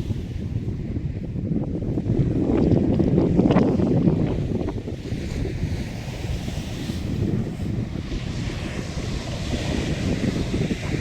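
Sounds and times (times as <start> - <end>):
wind buffeting microphone: 0.0 - 11.0
sea waves rushing: 3.0 - 11.0.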